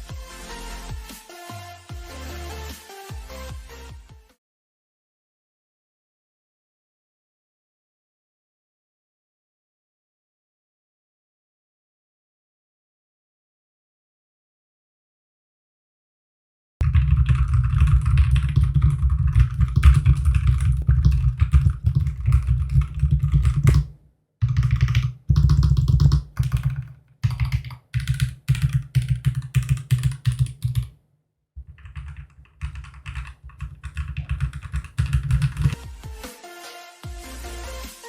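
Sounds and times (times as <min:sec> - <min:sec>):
mechanical keyboard typing: 0:16.8 - 0:30.9, 0:31.6 - 0:35.8.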